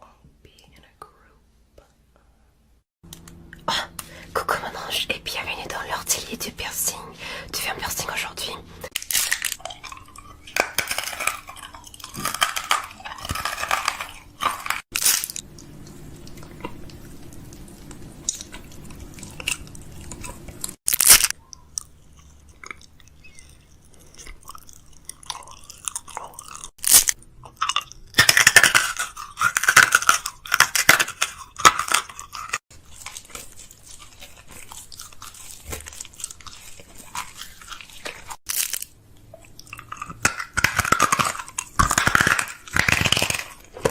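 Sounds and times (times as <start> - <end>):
food packaging crinkling: 8.9 - 43.9.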